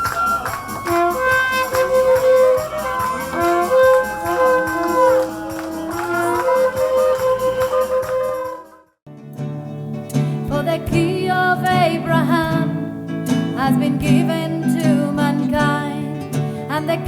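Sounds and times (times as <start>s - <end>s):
melody of held notes: 0.0s - 8.0s
steady drum beat: 0.0s - 8.3s.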